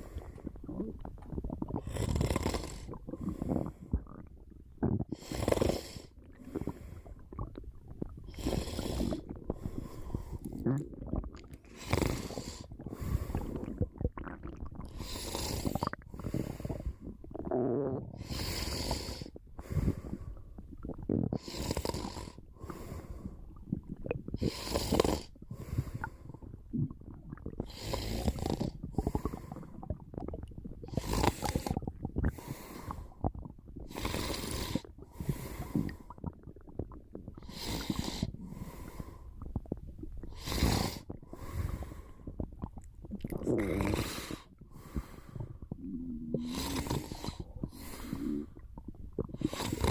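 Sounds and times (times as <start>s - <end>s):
stomach rumbling: 0.0s - 49.9s
person snoring: 1.8s - 2.9s, 5.2s - 6.1s, 11.8s - 13.5s, 15.0s - 15.9s, 21.3s - 22.4s, 27.7s - 29.4s, 30.9s - 31.8s, 43.4s - 44.5s, 45.8s - 48.5s, 49.4s - 49.9s.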